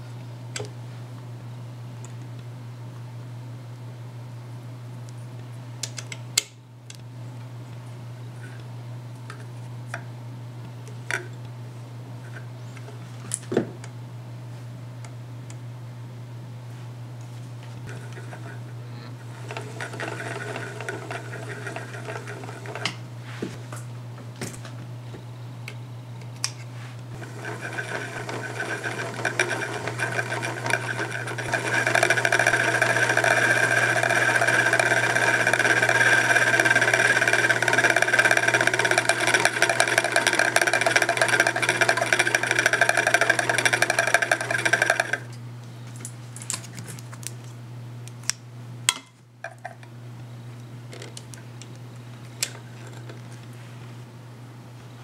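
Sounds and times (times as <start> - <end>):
sewing machine running: 19.2 - 23.0, 27.2 - 45.3.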